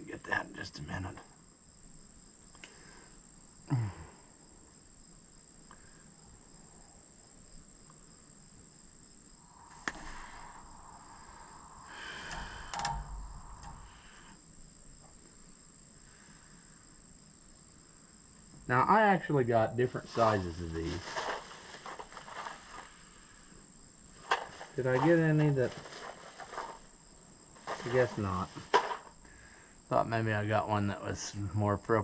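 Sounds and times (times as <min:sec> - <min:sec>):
crickets droning: 0:00.0 - 0:32.0
faint rustles: 0:09.3 - 0:15.3, 0:19.9 - 0:29.7
sharp clicks: 0:12.0 - 0:14.0.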